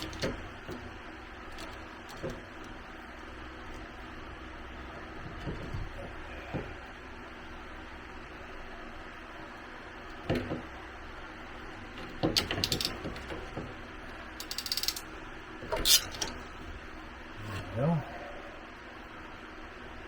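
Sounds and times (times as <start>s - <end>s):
tools clicking and knocking: 12.1s - 13.4s, 14.4s - 15.1s, 15.8s - 16.4s
rapid ratchet clicking: 12.4s - 13.1s, 14.4s - 15.1s, 15.8s - 16.3s.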